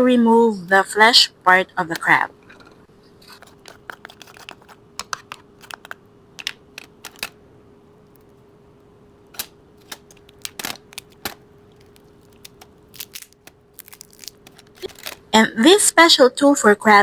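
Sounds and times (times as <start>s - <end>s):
faint steady hum: 0.0s - 17.0s
crab shell cracking: 9.4s - 15.3s.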